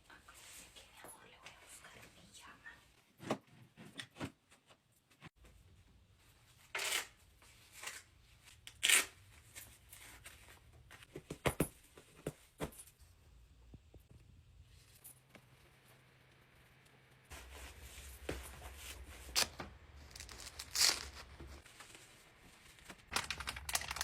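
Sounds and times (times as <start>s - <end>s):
rustling handling noises: 17.3s - 24.0s.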